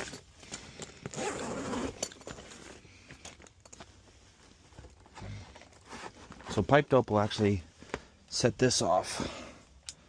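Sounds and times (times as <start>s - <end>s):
tool handling rustle: 0.0s - 8.0s.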